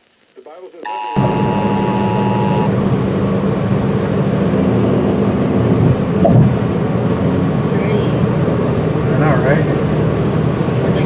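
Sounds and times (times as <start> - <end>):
two-tone alert signal: 0.8 - 2.8
loud rumbling noise with hum: 1.2 - 11.0.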